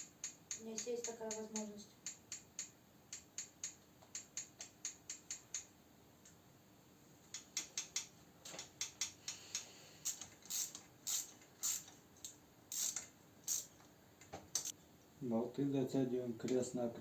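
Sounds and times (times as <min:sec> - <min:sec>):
ratchet wrench clicking: 0:00.0 - 0:05.7, 0:07.3 - 0:13.8, 0:14.5 - 0:14.8.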